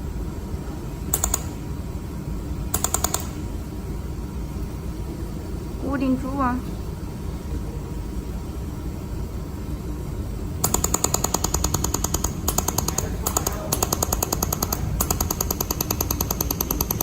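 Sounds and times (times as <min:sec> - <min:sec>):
steady low hum: 0:00.0 - 0:17.0
laser welder clicking: 0:01.1 - 0:01.6, 0:02.8 - 0:03.4, 0:10.6 - 0:17.0.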